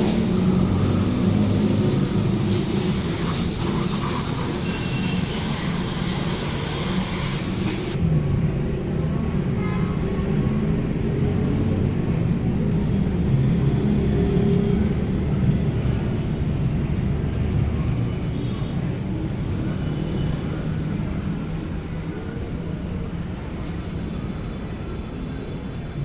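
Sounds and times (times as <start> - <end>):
motor running: 0.0 - 8.0.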